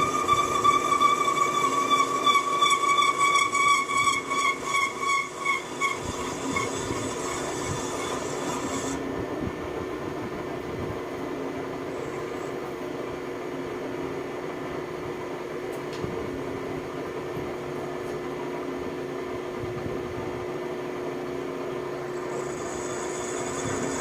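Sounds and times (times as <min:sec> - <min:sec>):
metalworking machine ringing squeal: 0:00.0 - 0:09.0, 0:22.1 - 0:24.0
steady motor hum: 0:00.0 - 0:24.0.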